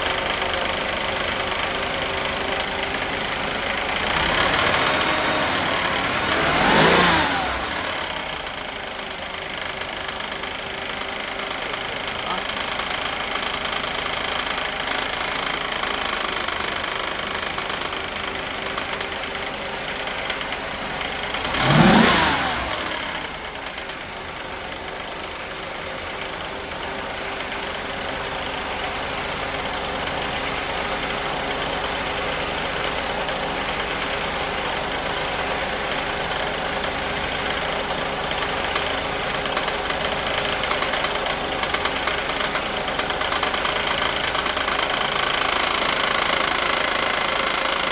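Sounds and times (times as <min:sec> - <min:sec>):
car engine idling with knocking: 0:00.0 - 0:47.9
engine revving: 0:03.8 - 0:08.6, 0:21.3 - 0:23.6.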